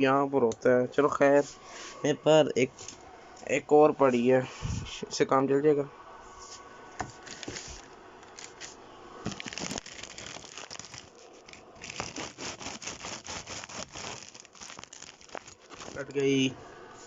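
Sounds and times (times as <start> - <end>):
plastic packaging crinkling and tearing: 7.2 - 16.3
blade cutting plastic: 9.3 - 16.2.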